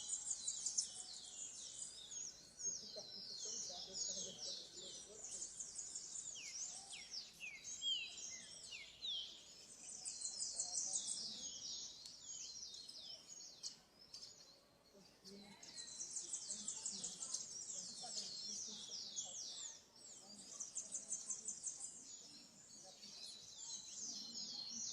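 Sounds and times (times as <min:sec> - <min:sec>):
chorus of bird chirps: 0:00.0 - 0:24.9.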